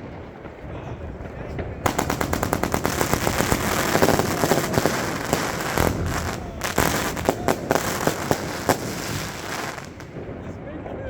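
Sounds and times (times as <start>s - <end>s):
fireworks shells bursting: 1.9s - 10.2s.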